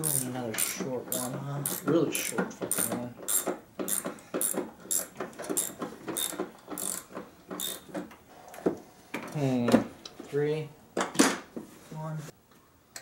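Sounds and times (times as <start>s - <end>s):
ratchet wrench clicking: 0.0s - 7.8s.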